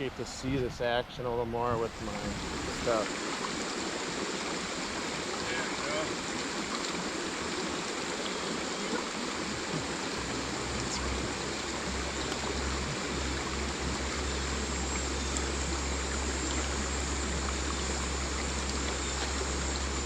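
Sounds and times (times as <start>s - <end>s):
creek water running: 0.0s - 20.0s
low rumble: 1.9s - 2.9s.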